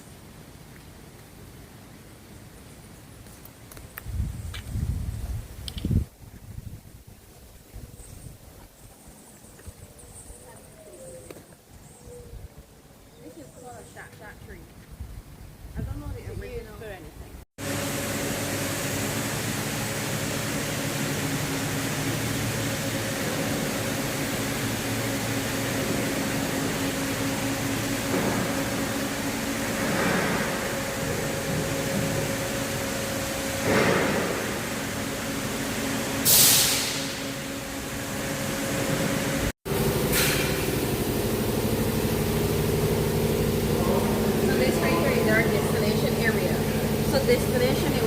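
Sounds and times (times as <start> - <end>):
machinery hum: 17.3 - 48.0
short loud hiss: 36.2 - 37.4, 40.1 - 40.7.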